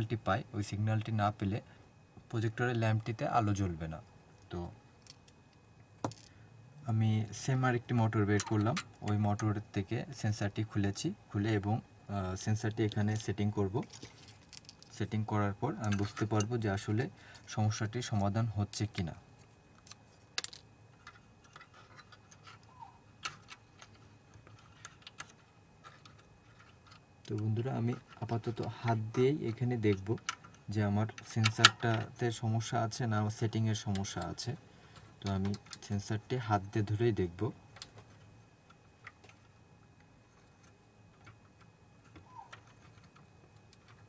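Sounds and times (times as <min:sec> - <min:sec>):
faint hum: 0:00.0 - 0:44.0
clicks and taps of small parts: 0:19.8 - 0:27.4.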